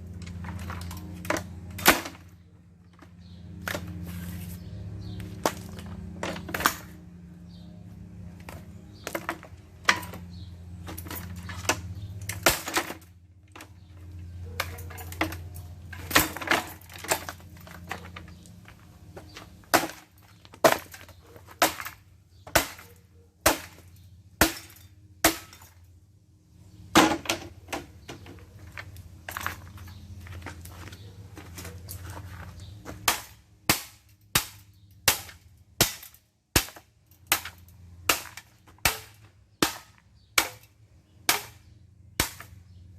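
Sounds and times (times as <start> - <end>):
ceiling fan being smashed: 0.8 - 2.3, 11.0 - 13.1, 24.4 - 25.8, 33.0 - 40.7, 42.2 - 42.6.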